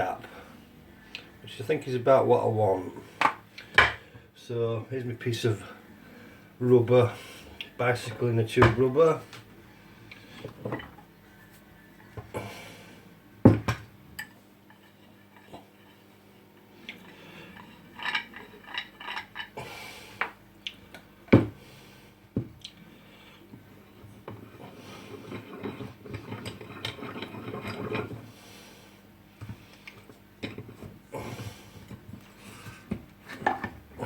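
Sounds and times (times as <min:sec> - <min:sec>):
metal tools clinking and knocking: 0:17.6 - 0:19.5.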